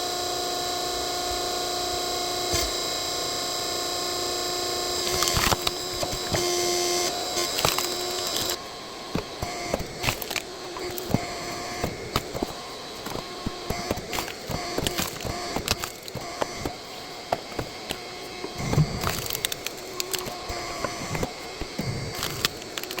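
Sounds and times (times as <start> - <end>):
log splitter humming: 4.9 - 23.0
wood cracking and splintering: 9.2 - 23.0.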